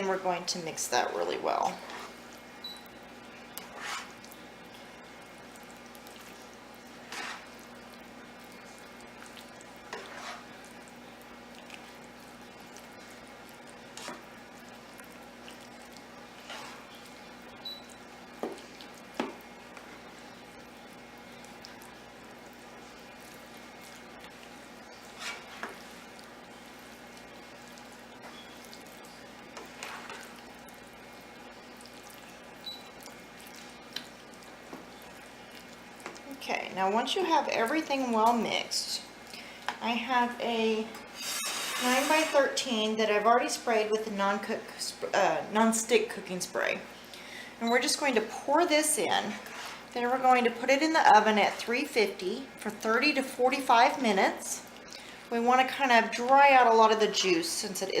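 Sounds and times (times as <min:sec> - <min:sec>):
spoon stirring thick wet mix: 0:00.0 - 0:40.3, 0:40.9 - 0:43.2, 0:49.2 - 0:57.2
faint steady hum: 0:00.0 - 0:58.0.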